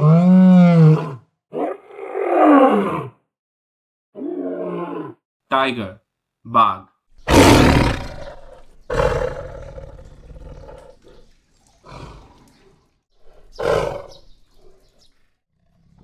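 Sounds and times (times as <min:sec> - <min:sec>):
tiger roaring: 0:00.0 - 0:03.2, 0:07.2 - 0:11.2, 0:13.2 - 0:14.8.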